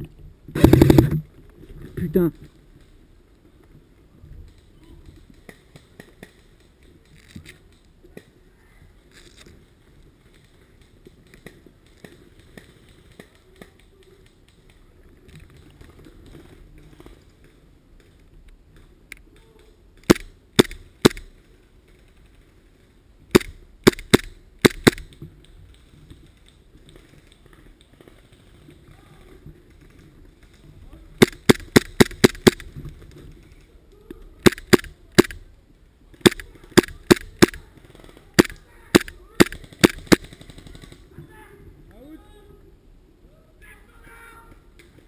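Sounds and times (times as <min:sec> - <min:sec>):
airsoft gun shots: 0:20.0 - 0:21.3, 0:23.3 - 0:25.2, 0:31.2 - 0:32.7, 0:34.4 - 0:35.4, 0:36.2 - 0:37.6, 0:38.4 - 0:40.9.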